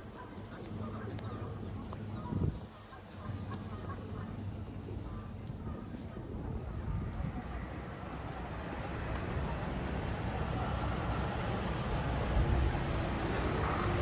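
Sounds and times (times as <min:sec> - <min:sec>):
low rumble of city traffic: 0:00.0 - 0:14.0.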